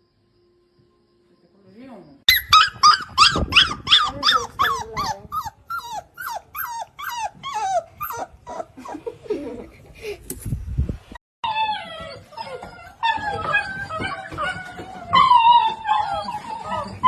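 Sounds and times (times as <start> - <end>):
puppy yelping: 2.3 - 9.0, 11.4 - 17.0.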